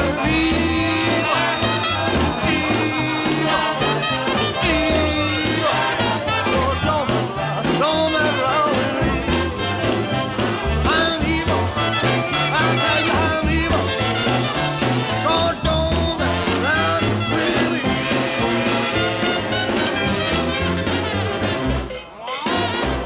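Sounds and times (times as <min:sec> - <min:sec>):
walking bass line: 0:00.0 - 0:22.0
sliding horn phrases: 0:00.0 - 0:23.0
swing band with brass: 0:00.0 - 0:23.0.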